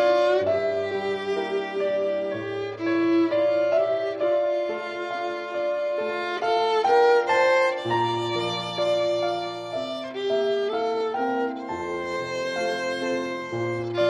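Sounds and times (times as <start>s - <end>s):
slow violin-like melody: 0.0s - 14.0s.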